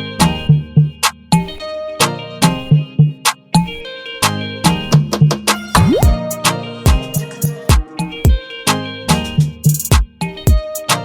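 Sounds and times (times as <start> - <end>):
guitar music: 0.0 - 11.0
steady drum beat: 4.9 - 8.4, 9.4 - 10.8.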